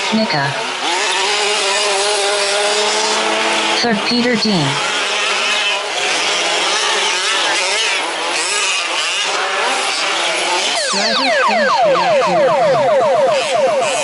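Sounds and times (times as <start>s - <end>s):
small engines revving: 0.0s - 14.0s
falling whines: 10.7s - 14.0s.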